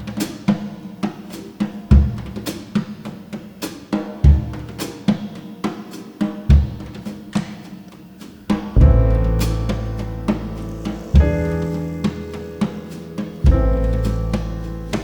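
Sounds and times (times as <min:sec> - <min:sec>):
bass drum thuds: 0:08.5 - 0:15.0.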